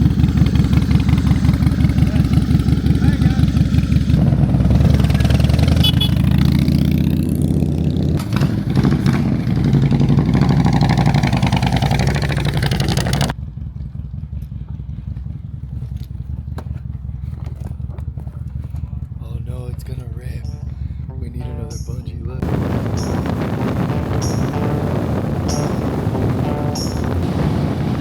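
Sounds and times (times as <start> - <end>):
motorcycle engine revving: 0.0 - 28.0.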